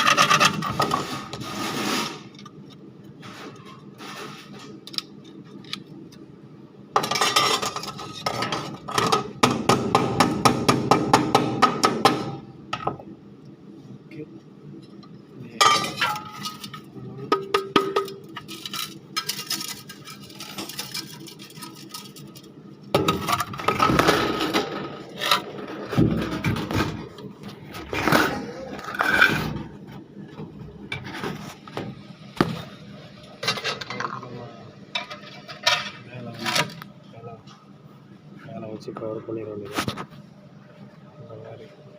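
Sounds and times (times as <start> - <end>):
metal parts clinking and scraping: 18.0 - 22.6.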